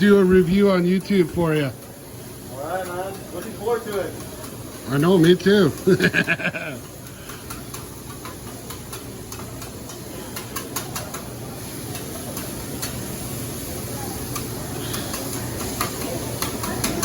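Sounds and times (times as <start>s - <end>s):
food sizzling on griddle: 0.0s - 17.0s
metal spatula clicks and scrapes: 2.8s - 5.9s, 6.8s - 13.2s, 14.2s - 17.0s.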